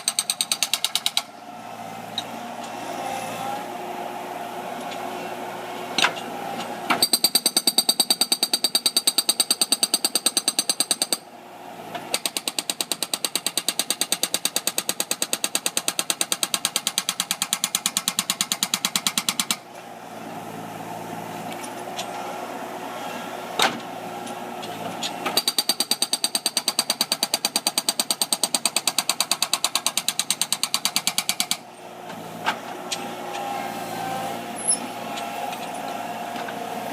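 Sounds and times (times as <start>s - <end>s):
loader engine running: 0.0s - 7.0s, 19.7s - 25.4s, 31.6s - 36.9s
hydraulic breaker pounding concrete: 12.1s - 19.6s, 25.2s - 31.6s.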